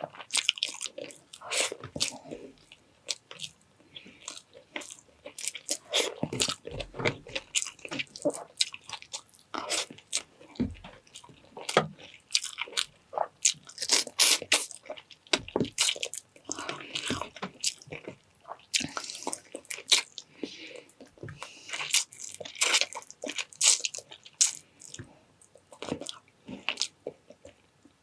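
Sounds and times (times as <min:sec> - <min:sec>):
wet chewing: 0:11.0 - 0:27.6.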